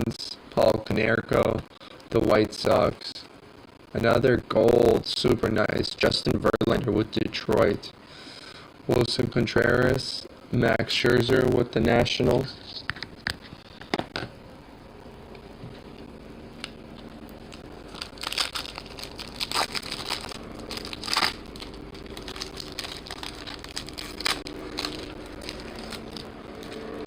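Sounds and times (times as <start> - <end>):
foil wrappers crinkling and tearing: 17.4 - 27.0.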